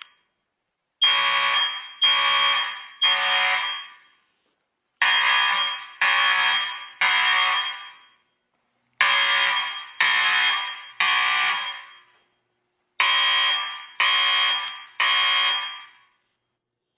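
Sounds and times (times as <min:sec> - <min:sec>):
fire alarm blasts: 0:01.0 - 0:04.3, 0:05.0 - 0:08.4, 0:09.0 - 0:12.4, 0:13.0 - 0:16.2.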